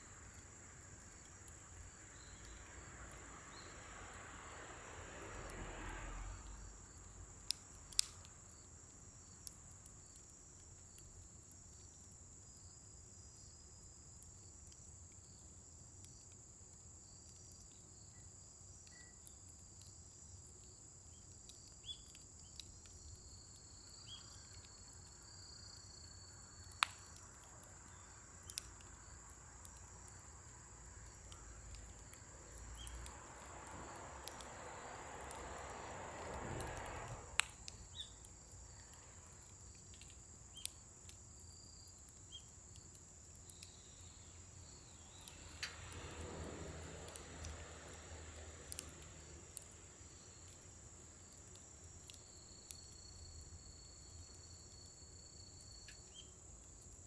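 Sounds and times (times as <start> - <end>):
wood fire crackling and popping: 0.0 - 57.0
high insect trill: 17.0 - 57.0.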